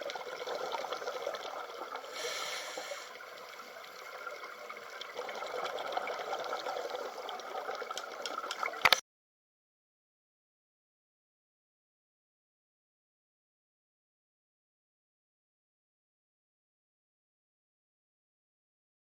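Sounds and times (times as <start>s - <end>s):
water trickling and gurgling: 0.0s - 9.0s.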